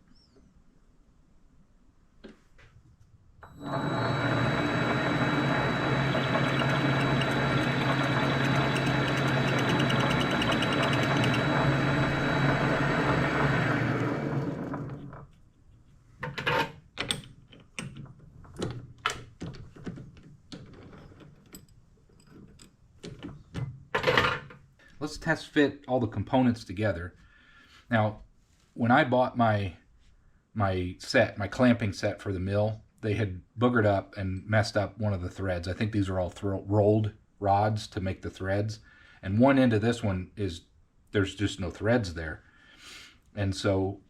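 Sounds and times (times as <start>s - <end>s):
electric machine motor whining: 3.4s - 15.2s
metal parts clicking and knocking: 6.4s - 11.5s, 16.2s - 24.6s.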